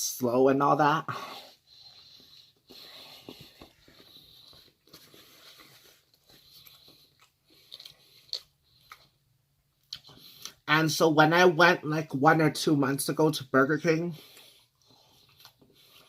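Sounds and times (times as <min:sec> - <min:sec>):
person chewing food: 0:01.3 - 0:10.6, 0:14.2 - 0:16.0.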